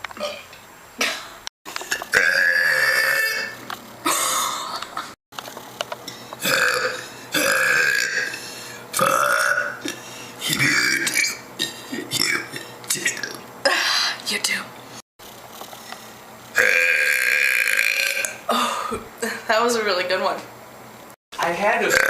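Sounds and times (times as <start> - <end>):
woman burping: 0.2 - 5.2, 6.4 - 8.4, 9.0 - 14.0, 16.6 - 19.4.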